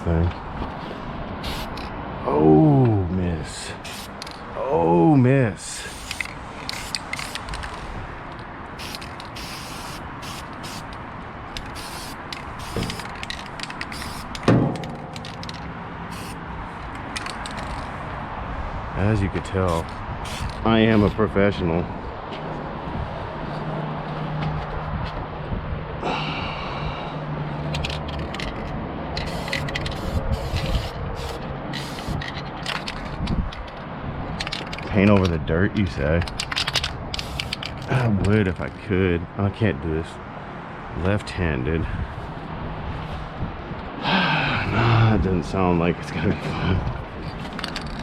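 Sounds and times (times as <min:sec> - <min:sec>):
spray paint can hissing: 0:01.4 - 0:01.8, 0:03.8 - 0:04.2, 0:05.9 - 0:07.7, 0:08.8 - 0:10.9, 0:11.6 - 0:14.4, 0:16.1 - 0:16.4, 0:19.8 - 0:20.6, 0:29.2 - 0:32.2, 0:37.2 - 0:37.6.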